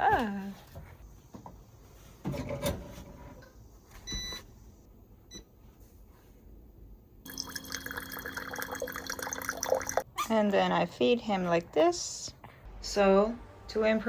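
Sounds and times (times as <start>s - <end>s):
electronic appliance beep: 4.1s - 4.4s
liquid pouring: 7.3s - 10.0s.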